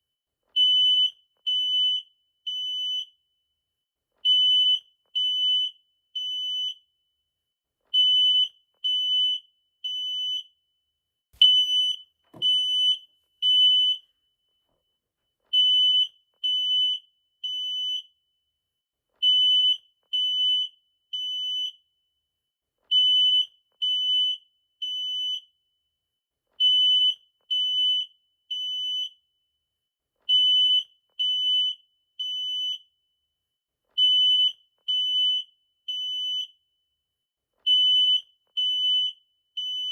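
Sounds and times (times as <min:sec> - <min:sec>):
smoke detector alarm beeps: 0:00.5 - 0:03.4, 0:04.3 - 0:07.0, 0:08.0 - 0:10.8, 0:11.4 - 0:14.4, 0:15.5 - 0:18.2, 0:19.2 - 0:22.1, 0:22.9 - 0:25.7, 0:26.6 - 0:29.4, 0:30.3 - 0:33.0, 0:34.0 - 0:36.7, 0:37.7 - 0:39.9.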